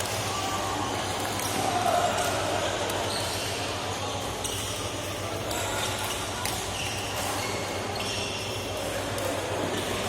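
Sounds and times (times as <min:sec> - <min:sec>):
background chatter: 0:00.0 - 0:10.0
shoes squeaking on court: 0:05.8 - 0:08.5.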